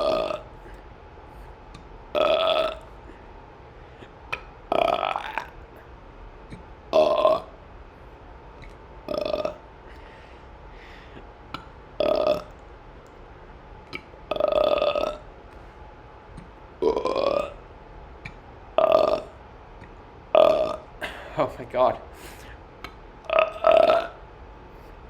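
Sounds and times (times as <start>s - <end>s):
person burping: 0.0s - 0.6s, 2.1s - 2.9s, 4.7s - 5.6s, 6.9s - 7.6s, 9.1s - 9.6s, 12.0s - 12.6s, 14.3s - 15.3s, 16.8s - 17.6s, 18.8s - 19.4s, 20.4s - 21.5s, 23.2s - 24.2s.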